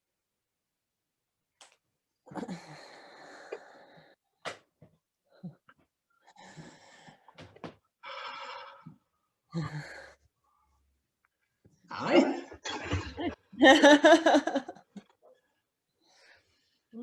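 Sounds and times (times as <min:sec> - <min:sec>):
person breathing: 0:06.2 - 0:07.4.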